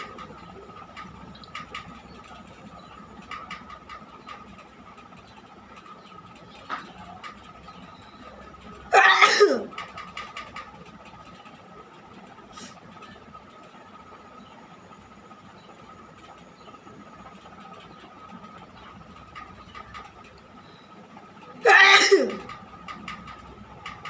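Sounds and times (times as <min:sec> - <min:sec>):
faint steady hum: 0:00.0 - 0:24.0
person sneezing: 0:09.0 - 0:09.7.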